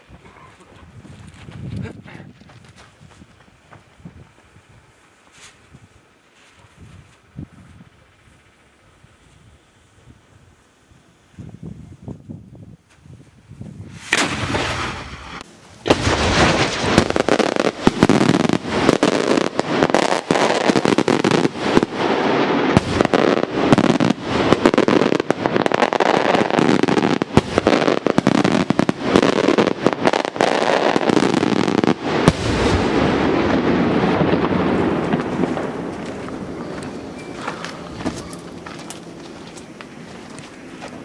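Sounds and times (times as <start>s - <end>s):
fireworks crackling: 13.6s - 41.0s
fireworks bangs: 13.9s - 41.0s.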